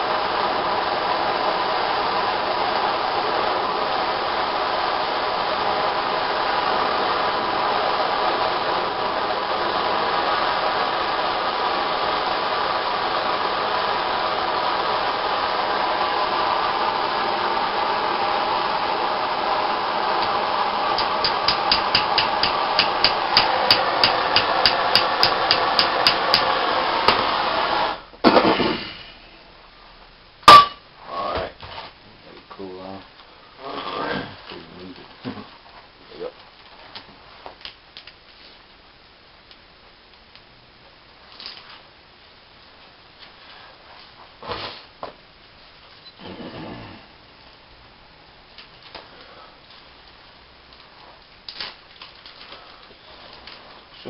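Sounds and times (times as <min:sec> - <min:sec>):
heating tool blowing hiss: 0:00.0 - 0:29.2
sharp metal knock: 0:30.5 - 0:30.8.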